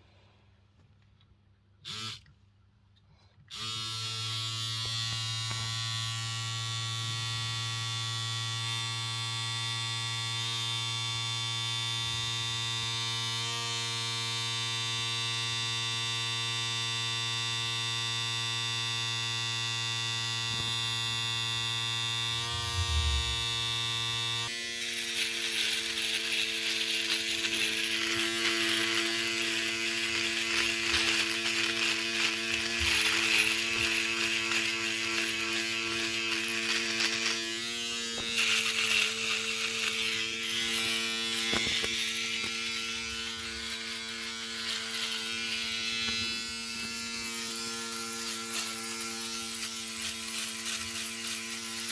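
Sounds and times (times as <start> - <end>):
electric shaver buzzing: 1.8 - 2.2, 3.5 - 51.9
low thump: 22.6 - 23.7.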